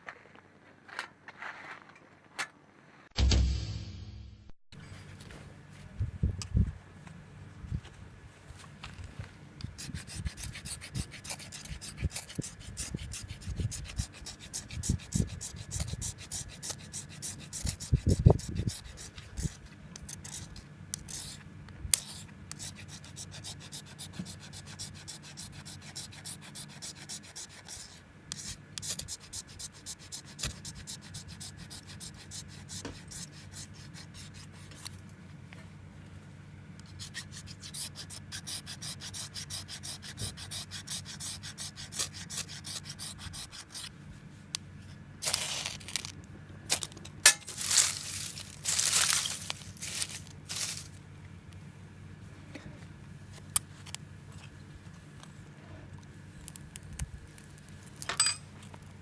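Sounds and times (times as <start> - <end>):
blade rasping firewood: 9.7 - 34.9, 36.8 - 43.9, 46.7 - 50.9.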